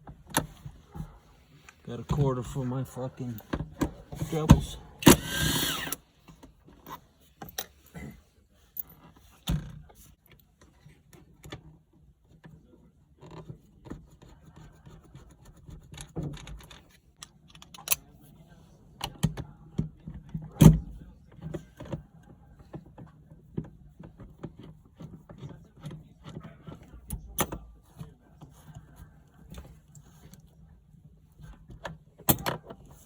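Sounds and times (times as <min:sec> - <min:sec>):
tools and parts clicking: 0:15.8 - 0:18.0, 0:32.2 - 0:32.8.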